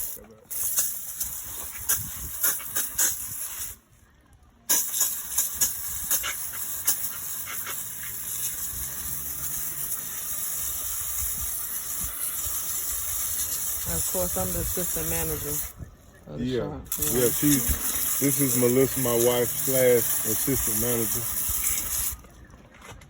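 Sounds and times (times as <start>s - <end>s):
hose spraying water: 0.0s - 3.8s, 4.7s - 15.8s, 16.9s - 22.5s
water spattering ticks: 16.9s - 22.3s.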